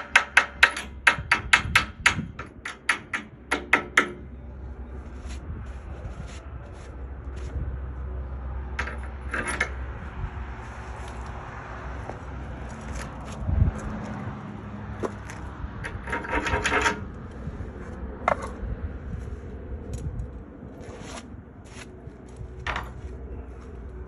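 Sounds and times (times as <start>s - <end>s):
metallic clinks and knocks: 8.8s - 9.9s, 22.6s - 23.1s
scraping rattle: 15.2s - 17.4s.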